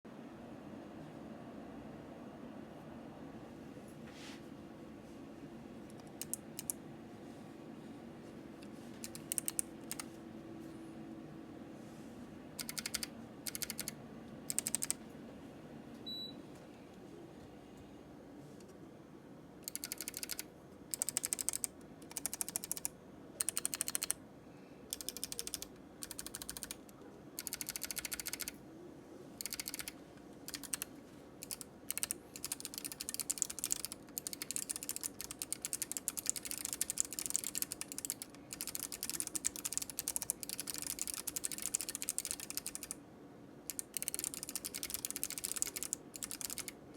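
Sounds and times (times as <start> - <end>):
mechanical keyboard typing: 5.9 - 6.8, 9.0 - 10.1, 12.6 - 15.0, 19.6 - 24.2, 24.9 - 28.6, 29.4 - 43.0, 43.7 - 46.8.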